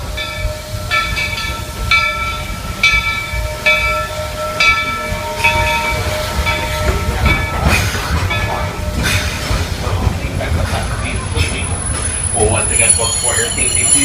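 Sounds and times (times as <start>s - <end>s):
locomotive bell ringing: 0.0s - 14.0s
steam engine low rumble: 0.0s - 14.0s.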